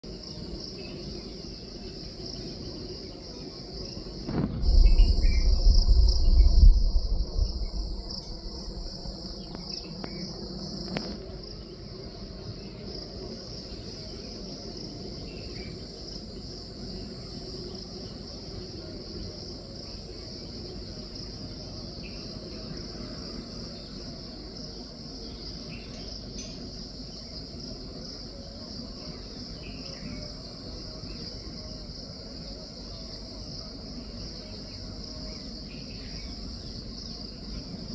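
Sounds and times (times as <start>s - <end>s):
insect chorus: 0.0s - 37.9s
loud low rumble: 4.3s - 10.4s.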